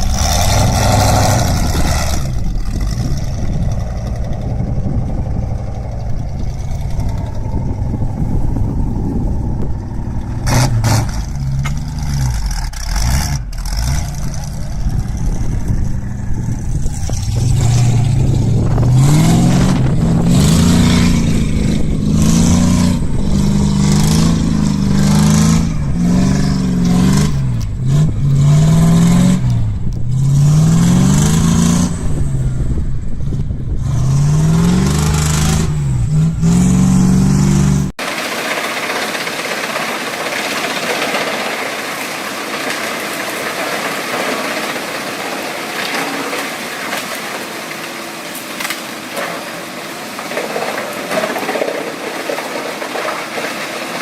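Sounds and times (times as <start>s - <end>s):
wood chipper engine running: 0.0s - 54.0s
wood cracking and clattering: 9.7s - 27.7s, 38.0s - 54.0s.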